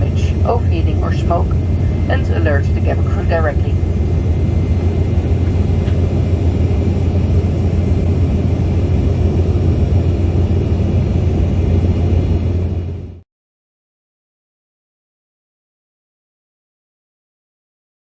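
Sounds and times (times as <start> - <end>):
airliner cabin engine rumble: 0.0 - 13.2.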